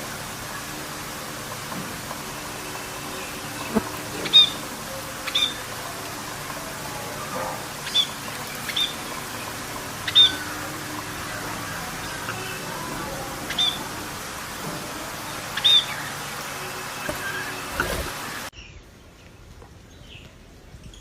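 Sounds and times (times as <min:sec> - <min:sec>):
steady background hiss: 0:00.0 - 0:21.0
bird chirping: 0:02.6 - 0:05.8, 0:07.1 - 0:14.0, 0:15.3 - 0:19.3.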